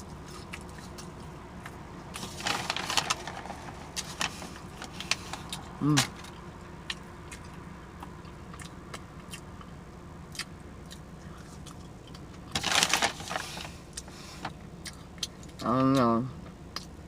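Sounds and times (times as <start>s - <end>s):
chewing and mouth smacking: 0.0s - 1.8s, 5.4s - 12.5s, 14.8s - 16.0s.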